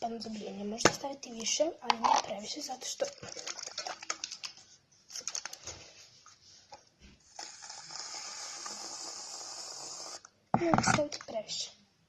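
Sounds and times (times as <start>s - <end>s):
aerosol can spraying foam: 7.4s - 10.2s.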